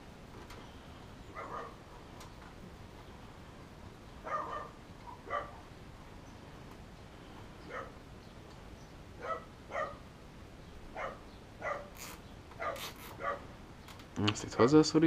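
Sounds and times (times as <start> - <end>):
dog barking: 1.3 - 1.8, 4.2 - 5.6, 7.7 - 8.0, 9.2 - 10.0, 10.9 - 12.0, 12.6 - 13.5.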